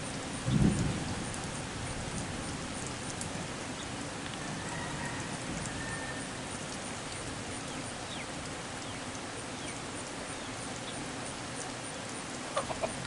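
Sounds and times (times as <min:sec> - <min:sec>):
rain pattering: 0:00.0 - 0:13.0.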